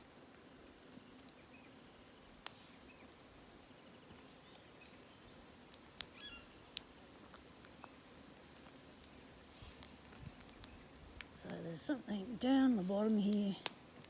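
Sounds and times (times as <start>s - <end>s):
faint bird chirps: 0.9s - 6.8s.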